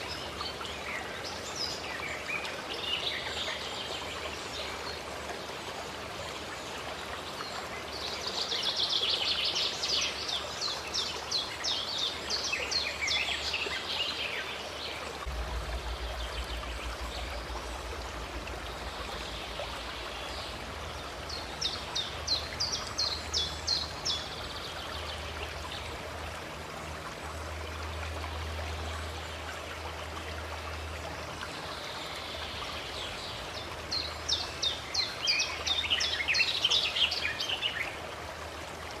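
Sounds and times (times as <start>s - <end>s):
stream water rushing: 0.0s - 39.0s
songbird singing: 7.2s - 26.0s.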